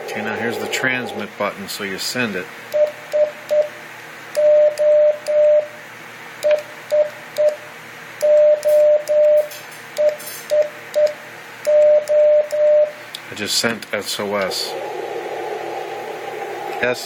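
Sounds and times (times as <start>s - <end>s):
morse code beeps: 4.4s - 5.7s, 8.2s - 13.0s.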